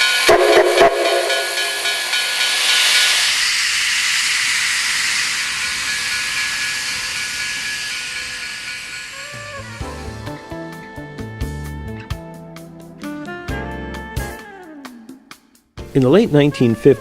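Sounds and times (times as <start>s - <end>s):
locomotive steam hissing: 0.0s - 10.7s
steam whistle chord: 0.0s - 12.4s.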